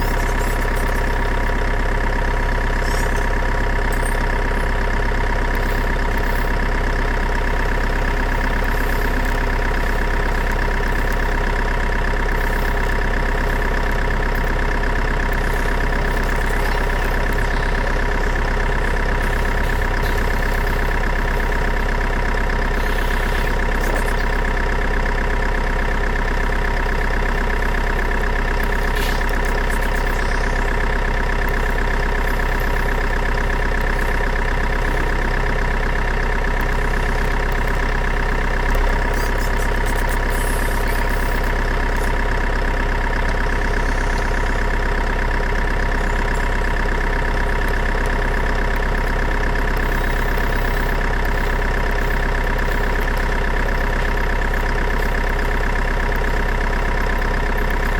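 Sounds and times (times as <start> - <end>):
motor droning steadily: 0.0 - 57.9.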